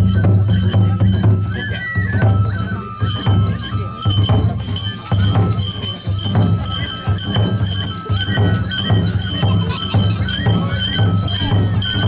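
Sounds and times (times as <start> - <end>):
held flute-like tones: 0.0 - 12.0
jingling percussion: 0.0 - 12.0
drum strikes: 4.0 - 12.0.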